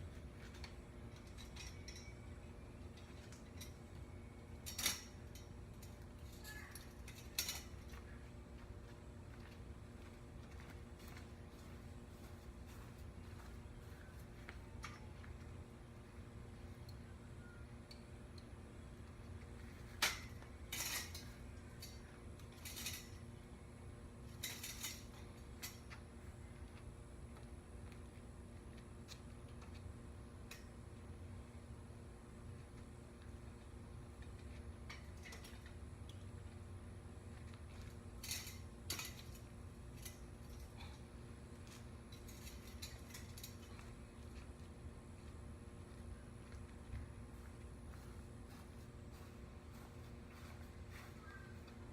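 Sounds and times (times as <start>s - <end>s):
low steady hum: 0.0s - 51.9s
metal trampoline springs clinking: 0.2s - 8.2s, 17.8s - 26.2s, 34.8s - 36.2s, 37.7s - 44.0s
metal springs clicking: 4.5s - 7.8s, 20.0s - 23.2s, 24.3s - 25.9s, 38.2s - 40.7s.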